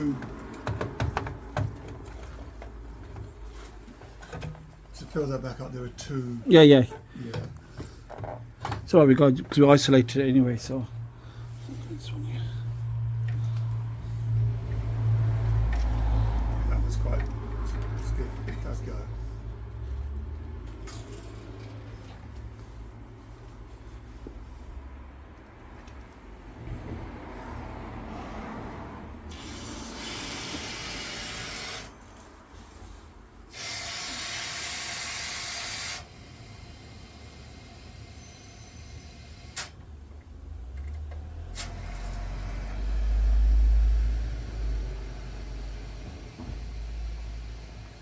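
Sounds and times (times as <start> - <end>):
water hissing through valve: 33.5 - 39.7.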